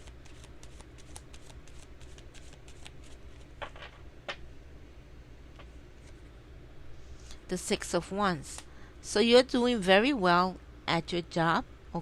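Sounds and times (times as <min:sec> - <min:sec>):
cards being shuffled: 0:00.0 - 0:04.0.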